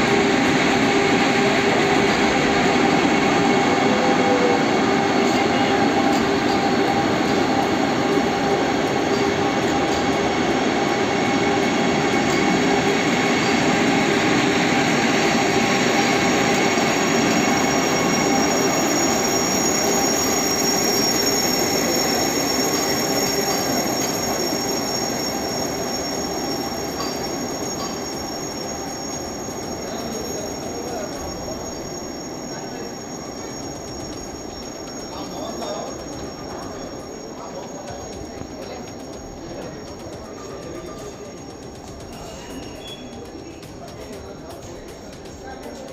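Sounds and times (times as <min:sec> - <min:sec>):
electric train rumbling and whining: 0:00.0 - 0:45.9.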